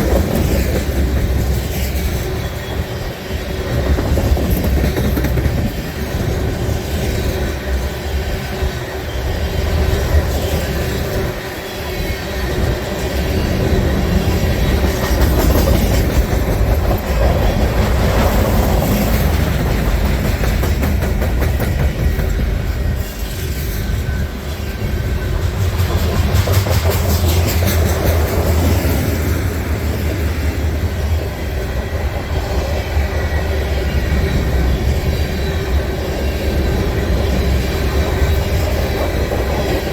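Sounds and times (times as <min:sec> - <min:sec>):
freight train rumbling past: 0:00.0 - 0:39.9
steel wheels clicking over rail joints: 0:03.7 - 0:06.3, 0:13.0 - 0:30.2.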